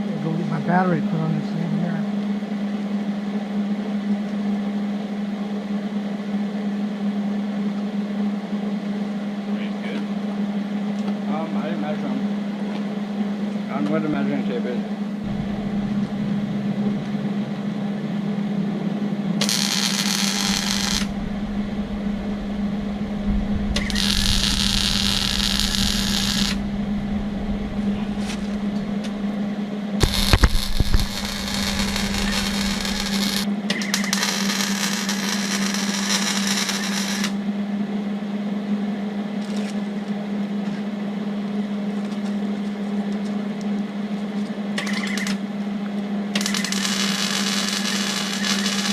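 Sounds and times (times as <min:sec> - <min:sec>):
welder humming: 0:15.1 - 0:37.4, 0:46.4 - 0:48.9
welding arc crackling and hissing: 0:15.3 - 0:17.2, 0:19.4 - 0:29.4, 0:30.0 - 0:37.4, 0:46.4 - 0:48.9.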